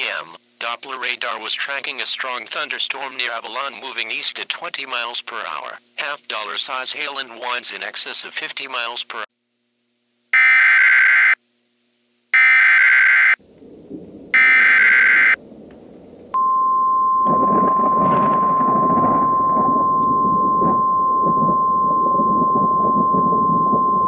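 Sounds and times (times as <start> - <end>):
harsh digital data bursts: 10.4 - 11.4, 12.4 - 13.4, 14.4 - 15.4
steady high warning tone: 12.4 - 24.0
rain: 12.5 - 16.4, 17.2 - 24.0
thunder: 13.4 - 24.0.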